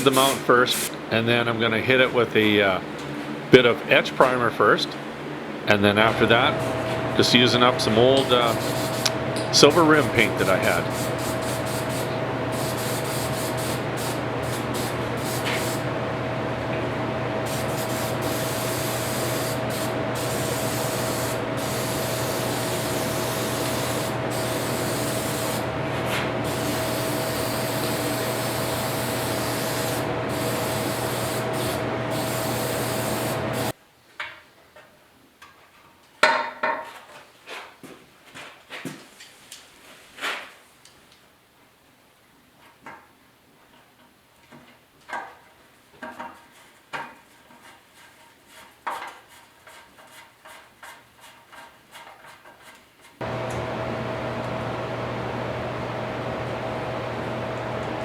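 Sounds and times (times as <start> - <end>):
compressed-air tool hissing: 0.0 - 0.9, 6.4 - 15.9, 17.3 - 33.8
machine hum: 5.2 - 33.7, 53.2 - 58.0.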